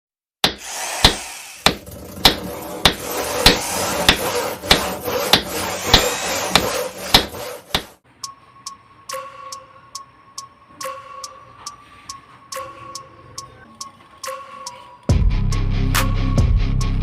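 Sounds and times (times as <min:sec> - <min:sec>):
hammering: 0:00.4 - 0:08.0.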